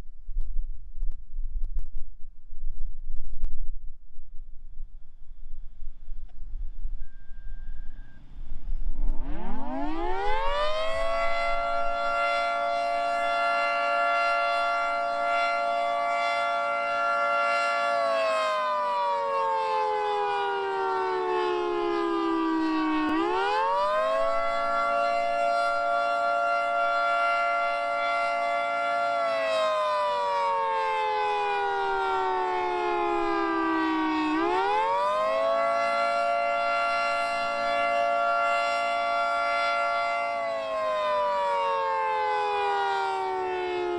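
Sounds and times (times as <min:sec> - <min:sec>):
warning siren wailing: 0:05.9 - 0:43.9.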